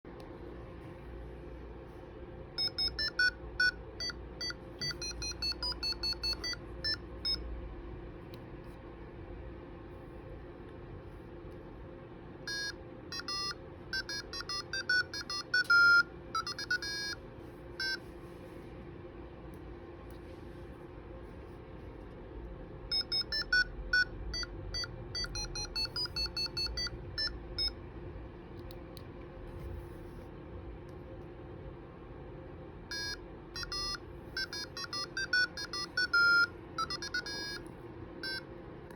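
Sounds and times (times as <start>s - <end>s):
faint steady hum: 0.1s - 38.9s
door alarm buzzer beeping: 12.5s - 17.2s, 32.9s - 37.6s.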